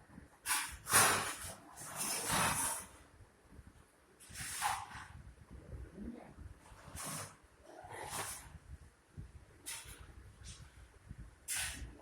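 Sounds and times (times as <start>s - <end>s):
puppy breathy hissing bursts: 11.5s - 12.0s.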